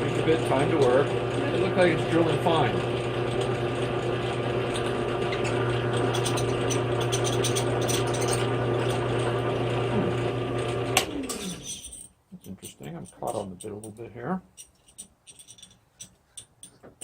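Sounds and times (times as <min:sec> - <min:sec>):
drill press humming: 0:00.0 - 0:11.8
drill bit cutting brass: 0:04.2 - 0:09.8.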